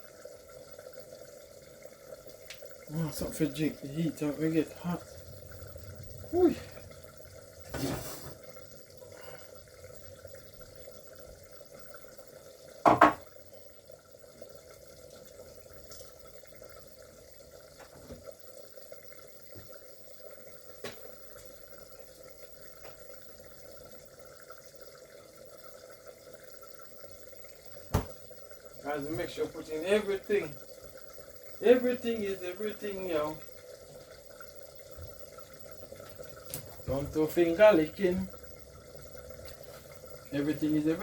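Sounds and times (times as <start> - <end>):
kitchen background hum and hiss: 0.0 - 41.0
loud knock: 12.9 - 13.2.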